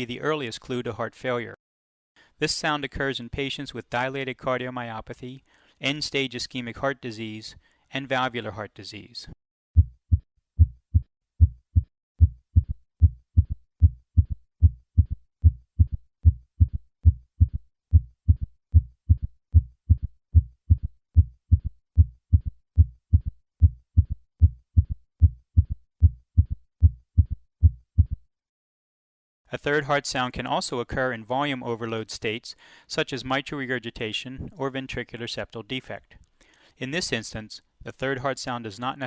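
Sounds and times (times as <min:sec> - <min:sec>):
heartbeat through stethoscope: 0:09.8 - 0:28.3.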